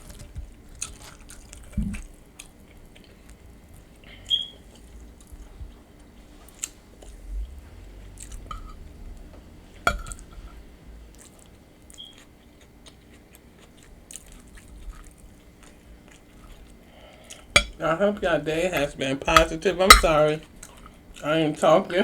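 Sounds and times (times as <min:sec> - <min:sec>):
person chewing crunchy chips: 0:00.0 - 0:08.5, 0:11.1 - 0:17.6.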